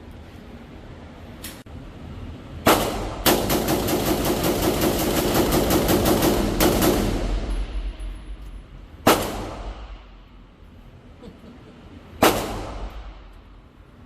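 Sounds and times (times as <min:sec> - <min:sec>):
gunshots: 0:02.7 - 0:08.1, 0:09.0 - 0:10.1, 0:12.2 - 0:13.3.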